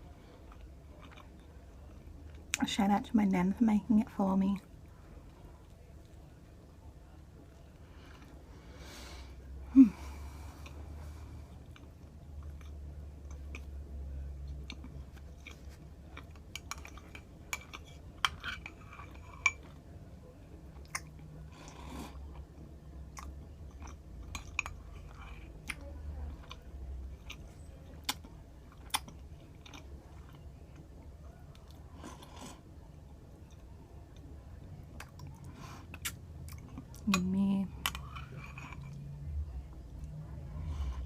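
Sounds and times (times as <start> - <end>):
low steady hum: 0.0 - 41.0
person chewing food: 0.1 - 2.6, 10.1 - 19.9, 20.6 - 32.7, 33.3 - 41.0.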